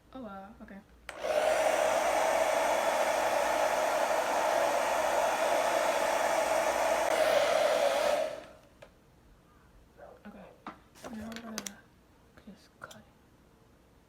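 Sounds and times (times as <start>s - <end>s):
blow dryer running: 1.1s - 8.7s.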